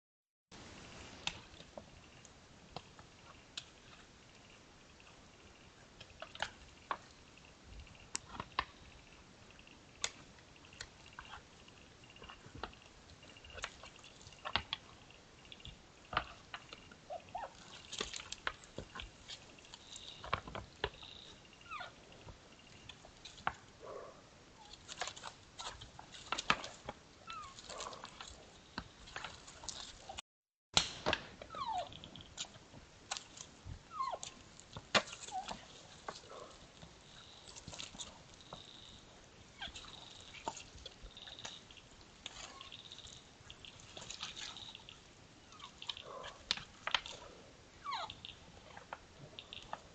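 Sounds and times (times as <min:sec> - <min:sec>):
deer squeaky sliding calls: 0:27.2 - 0:28.1, 0:31.5 - 0:32.0, 0:33.9 - 0:34.4, 0:35.3 - 0:38.8, 0:42.4 - 0:46.3, 0:47.2 - 0:48.4.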